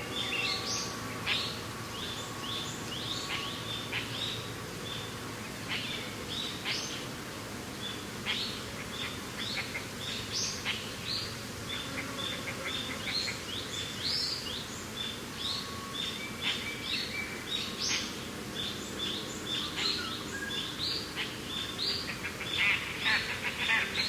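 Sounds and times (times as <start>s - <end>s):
many birds chirping: 0.0s - 7.1s, 7.8s - 24.0s.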